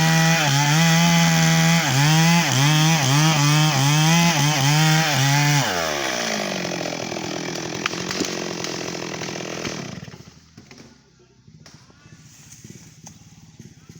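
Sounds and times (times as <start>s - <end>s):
chainsaw engine idling: 0.0s - 11.1s.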